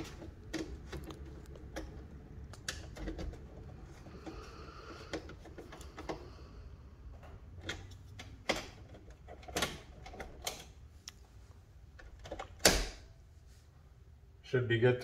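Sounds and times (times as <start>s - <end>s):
clicks and knocks in breaker panel: 12.0s - 13.1s.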